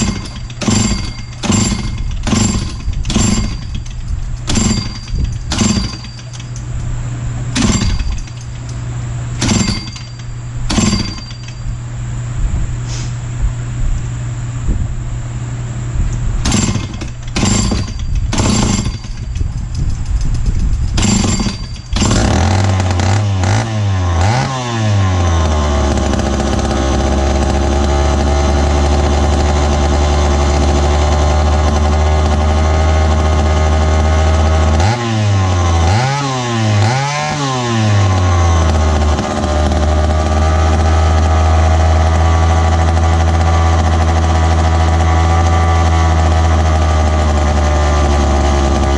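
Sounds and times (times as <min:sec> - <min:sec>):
chainsaw idling and revving: 0:00.0 - 0:03.7, 0:04.5 - 0:06.1, 0:07.5 - 0:08.3, 0:09.4 - 0:10.1, 0:16.4 - 0:19.2, 0:21.0 - 0:48.9
chainsaw starter cord pulls: 0:00.0 - 0:06.7, 0:16.5 - 0:48.9.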